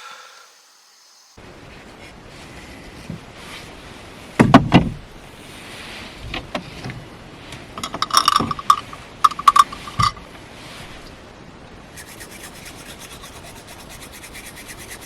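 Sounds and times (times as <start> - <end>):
sharp metallic clicks and clinks: 7.8 - 10.2.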